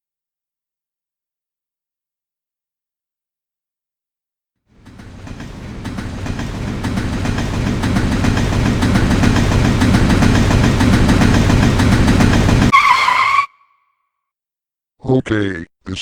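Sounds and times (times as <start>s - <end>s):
wheels clickety-clack over track: 4.7s - 12.9s
train rumbling on rails: 4.7s - 13.0s.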